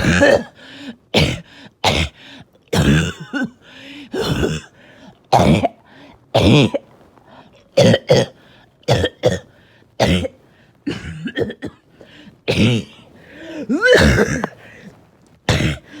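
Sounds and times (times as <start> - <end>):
person coughing: 0.0 - 0.6, 1.2 - 4.8, 5.4 - 5.8, 6.4 - 6.8, 7.8 - 11.8, 12.5 - 14.9, 15.5 - 16.0
strained breath: 3.6 - 4.2, 13.1 - 13.8.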